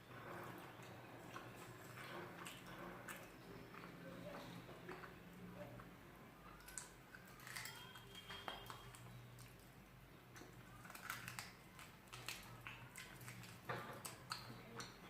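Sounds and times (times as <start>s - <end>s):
person chewing: 0.1s - 5.9s, 10.3s - 15.0s.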